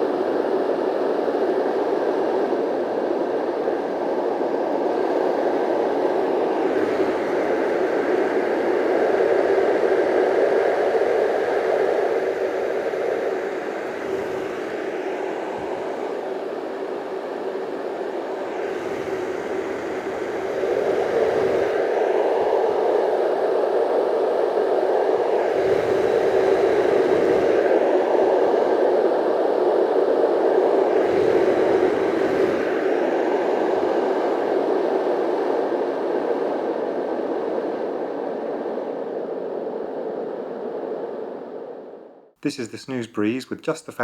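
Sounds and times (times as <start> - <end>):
fan airy rushing: 5.4 - 23.3.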